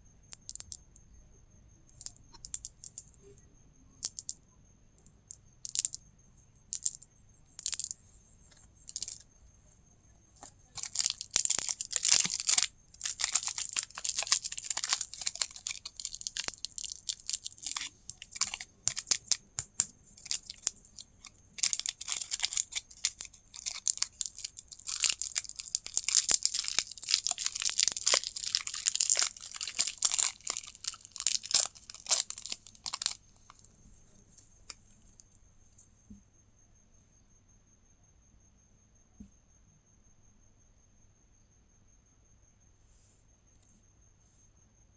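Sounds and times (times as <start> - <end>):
plastic wrapper crinkling: 10.8 - 19.3, 20.2 - 33.6.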